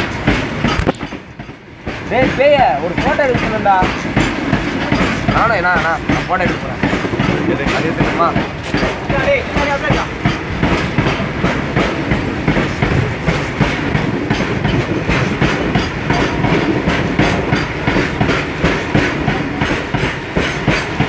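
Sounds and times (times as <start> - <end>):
train low rumble: 0.0 - 21.0
train wheels clicking over rails: 0.0 - 21.0.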